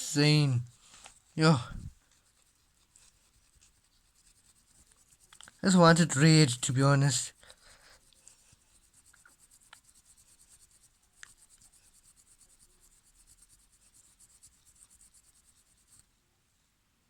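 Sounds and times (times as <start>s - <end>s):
rubbing strokes on a toy car: 0.0s - 16.2s
small sharp ticks: 4.4s - 5.6s, 7.5s - 16.1s.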